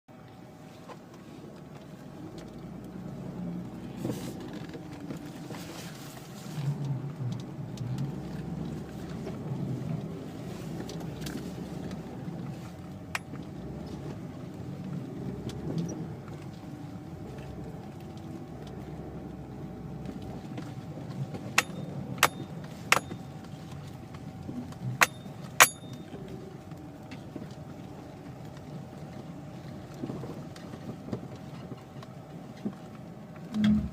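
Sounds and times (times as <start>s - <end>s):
car low rumble: 0.1s - 33.9s
suspension knocking: 21.5s - 23.2s.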